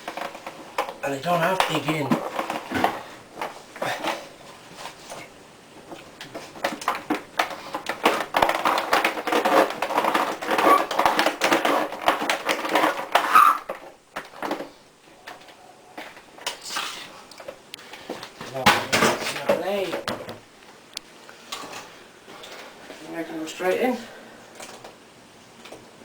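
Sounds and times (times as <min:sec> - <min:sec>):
plastic table clattering and scraping: 0:00.0 - 0:17.6, 0:18.4 - 0:20.4.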